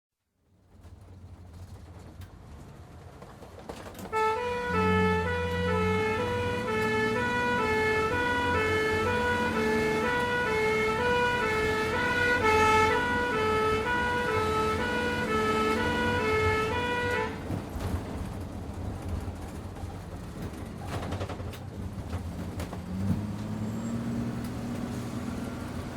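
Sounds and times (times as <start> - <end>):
vehicle engine rumble: 0.4 - 25.9
two-tone ambulance siren: 4.1 - 17.6.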